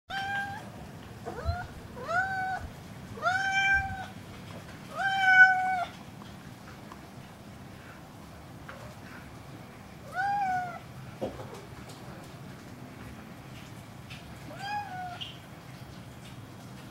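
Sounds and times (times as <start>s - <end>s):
cat meowing: 0.1s - 0.7s, 1.3s - 4.2s, 4.9s - 6.0s, 10.0s - 10.9s, 14.5s - 15.4s.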